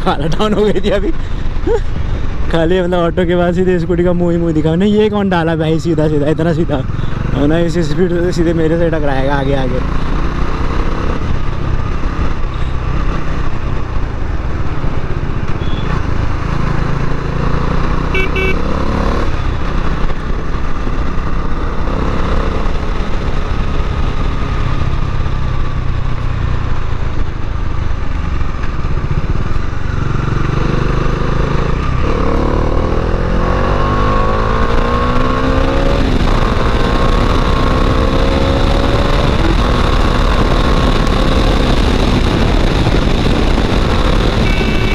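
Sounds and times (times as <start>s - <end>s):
motorcycle engine running: 6.1s - 33.4s, 34.0s - 44.9s
short high beep: 15.6s - 15.9s, 18.2s - 18.6s, 44.4s - 44.9s.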